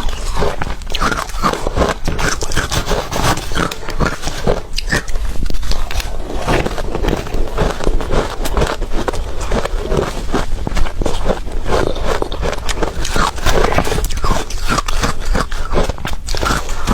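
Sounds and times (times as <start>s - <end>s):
ice being chewed: 0.0s - 16.9s.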